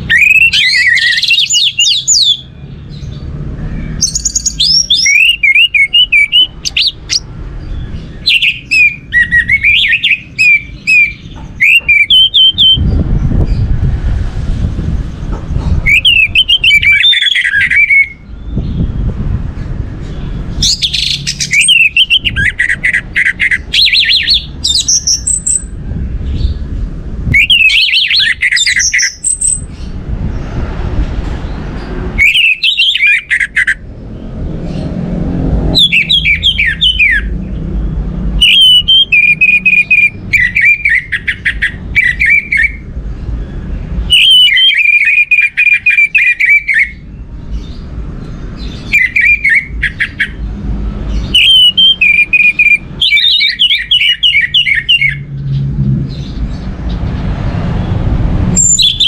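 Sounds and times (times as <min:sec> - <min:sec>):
low rumbling noise: 0:12.5 - 0:16.9, 0:18.2 - 0:27.6, 0:33.8 - 0:40.5, 0:55.0 - 0:59.0.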